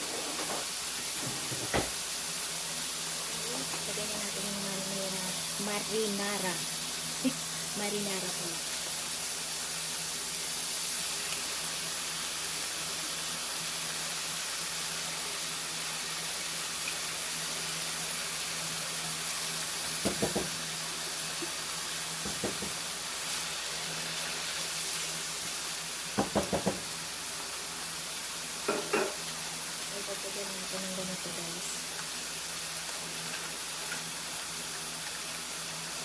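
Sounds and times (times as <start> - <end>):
meat sauce hissing in a pan: 0.0 - 36.0
spoon tapping a pan: 28.7 - 29.2.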